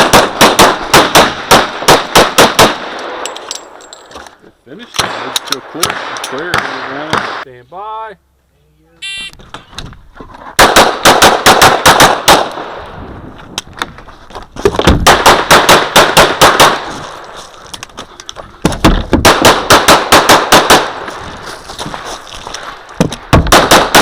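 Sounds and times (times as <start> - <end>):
pistol shots in rapid strings: 10.6 - 12.5, 19.2 - 20.9, 23.5 - 24.0.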